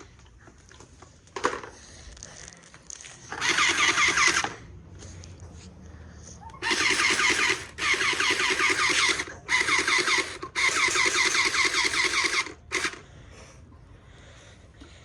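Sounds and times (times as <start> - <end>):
water blaster pump motor buzzing: 3.3 - 4.6, 6.6 - 13.0.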